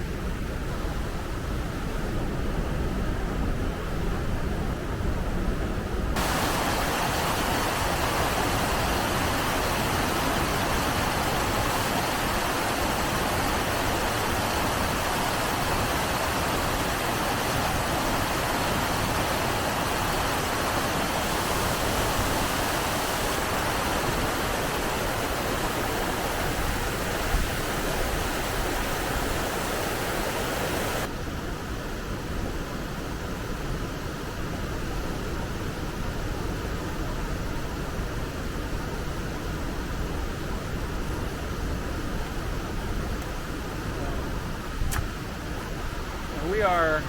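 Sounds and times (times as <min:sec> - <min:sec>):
rushing flowing water: 0:06.2 - 0:31.2, 0:35.5 - 0:47.0.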